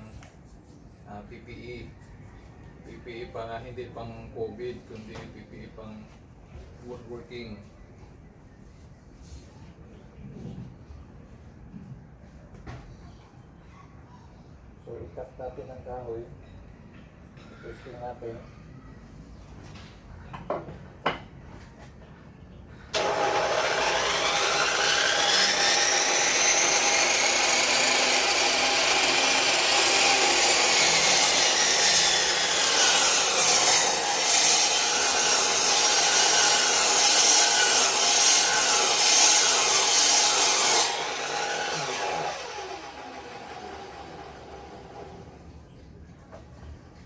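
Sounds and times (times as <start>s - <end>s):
electric miter saw cutting wood: 22.9s - 45.5s.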